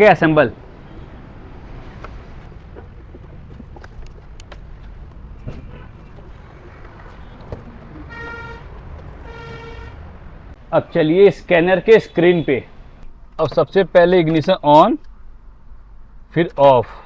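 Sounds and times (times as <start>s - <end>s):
low traffic rumble: 0.0s - 17.0s
vehicle horn honking: 5.5s - 6.1s, 7.0s - 10.1s.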